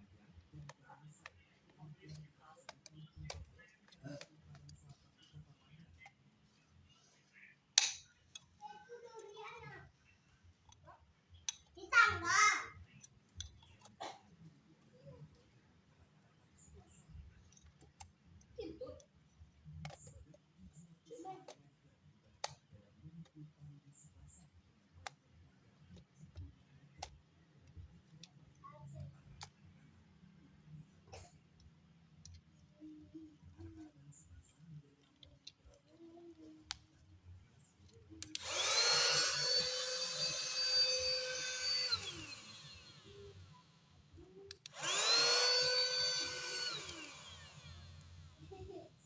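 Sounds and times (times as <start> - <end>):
switch clicking: 7.8 - 8.0
sharp clicks: 38.2 - 43.6, 44.5 - 48.3
vacuum cleaner motor whining: 38.2 - 49.0.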